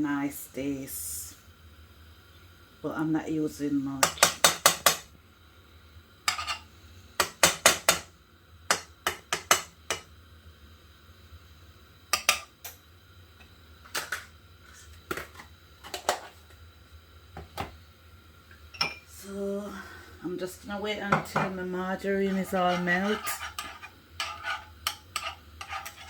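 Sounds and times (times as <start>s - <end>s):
metal utensil tapping a pot: 4.0s - 5.0s, 8.7s - 10.0s, 12.2s - 12.5s.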